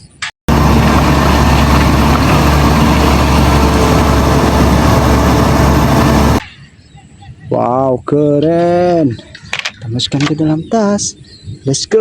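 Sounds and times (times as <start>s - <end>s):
bulldozer engine rumbling: 0.5s - 6.4s.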